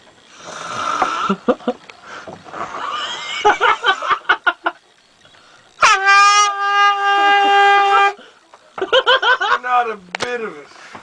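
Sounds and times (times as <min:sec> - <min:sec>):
fog horn blast: 0:05.8 - 0:08.2.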